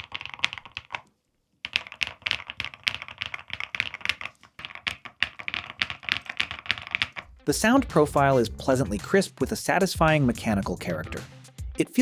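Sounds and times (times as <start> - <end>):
mechanical keyboard typing: 0.0 - 7.3.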